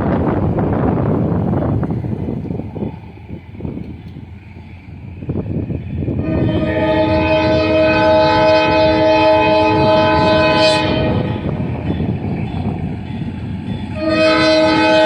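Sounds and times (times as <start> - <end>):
low wind rumble: 0.0 - 15.0
locomotive air horn blast: 6.2 - 11.6, 13.9 - 15.0.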